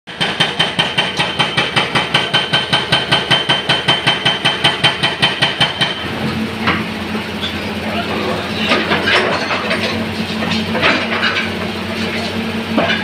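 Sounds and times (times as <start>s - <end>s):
hydraulic breaker hammering concrete: 0.1s - 13.0s
diesel engine running: 2.8s - 13.0s.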